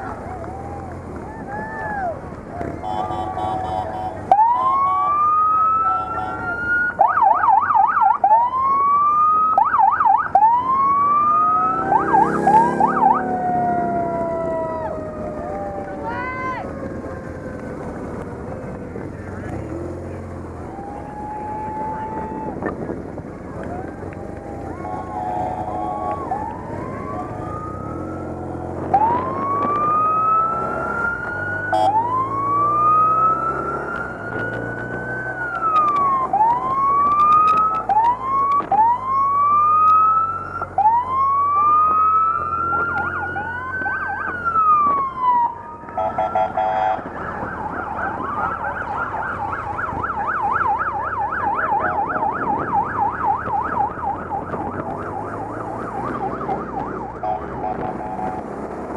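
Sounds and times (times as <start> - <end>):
motorcycle engines humming: 0.0 - 58.9
police sirens wailing: 0.0 - 58.9
short horn blasts: 2.8 - 4.2, 57.2 - 58.4.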